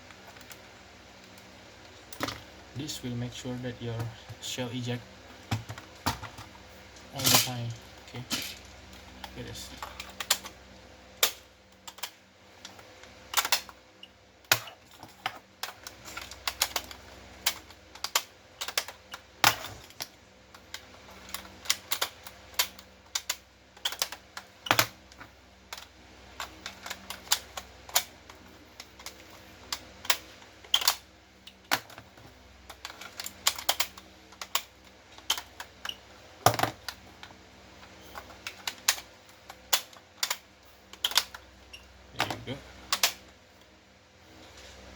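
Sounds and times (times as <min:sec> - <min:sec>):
plastic clicks of toy shotgun: 0:41.0 - 0:41.4.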